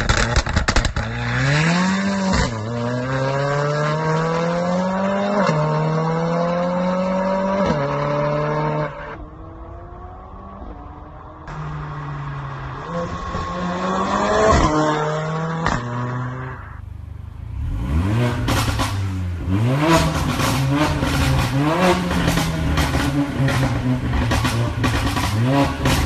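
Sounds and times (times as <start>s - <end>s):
exhaust crackles and pops: 0.0s - 1.6s
car engine revving: 0.0s - 26.0s.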